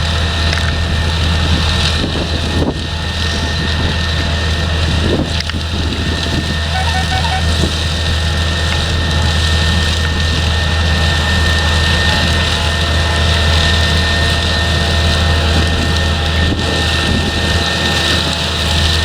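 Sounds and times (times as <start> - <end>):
machine engine drone: 0.0 - 19.0
high machine whine: 4.2 - 14.6.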